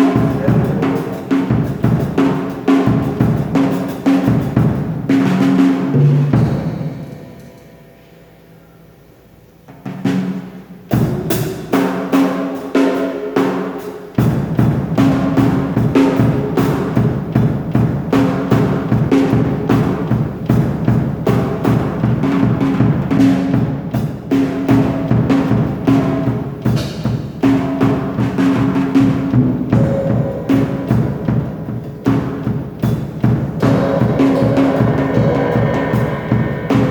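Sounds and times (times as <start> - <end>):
drum kit hits: 18.2 - 36.9
deep low drum thud: 29.4 - 36.9.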